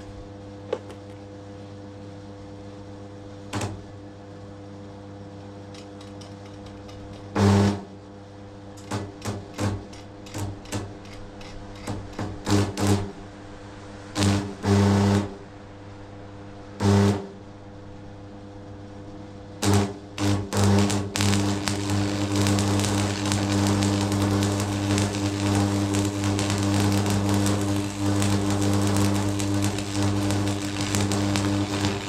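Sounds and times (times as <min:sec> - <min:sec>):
electric hammer rattling: 0:19.6 - 0:32.0.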